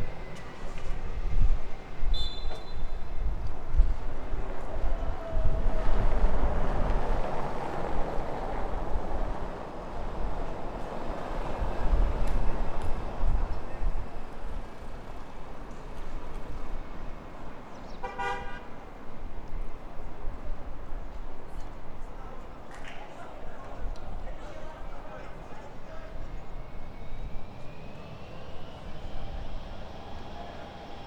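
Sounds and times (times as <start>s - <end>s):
jet engines rumbling: 24.2s - 31.0s.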